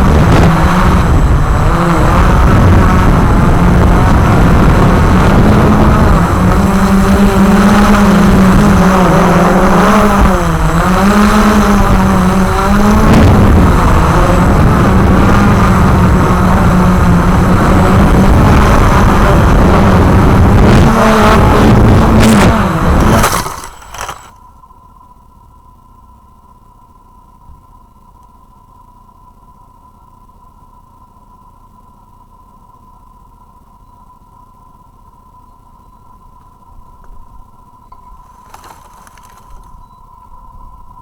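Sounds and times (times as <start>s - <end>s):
quadcopter motors buzzing: 0.0s - 24.4s, 37.8s - 40.2s.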